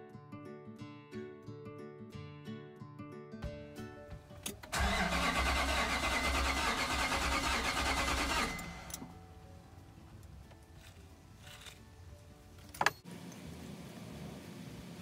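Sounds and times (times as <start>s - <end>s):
car engine cranking on starter: 4.5s - 9.2s.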